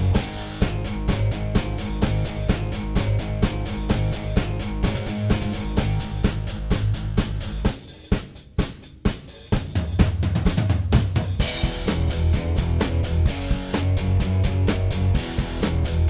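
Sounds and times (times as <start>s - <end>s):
rock music with drum kit: 0.0s - 16.0s
cymbal wash: 11.4s - 13.3s.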